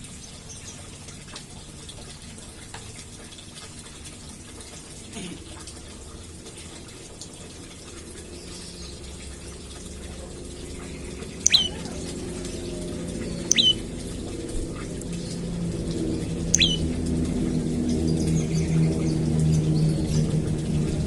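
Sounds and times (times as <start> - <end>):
low steady hum: 0.0 - 21.0
bird chirping: 10.9 - 13.9, 16.5 - 16.9.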